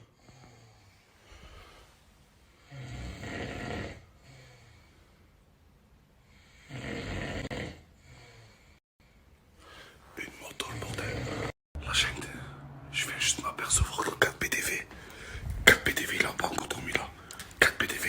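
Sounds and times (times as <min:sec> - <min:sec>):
quiet breaths: 0:00.0 - 0:03.2, 0:03.9 - 0:05.6, 0:07.9 - 0:18.0
man snoring: 0:02.6 - 0:04.8, 0:06.4 - 0:08.7, 0:10.4 - 0:18.0.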